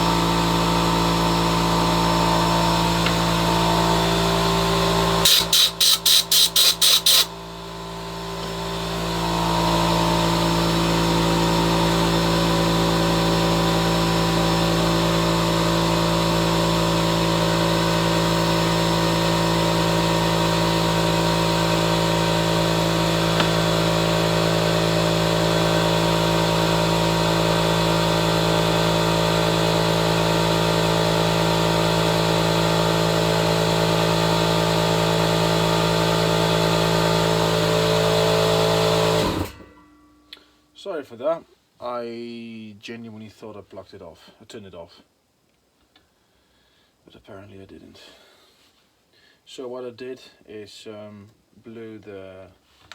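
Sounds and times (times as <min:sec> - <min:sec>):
air compressor motor drone: 0:00.0 - 0:39.6
air blow gun bursts: 0:05.2 - 0:07.4.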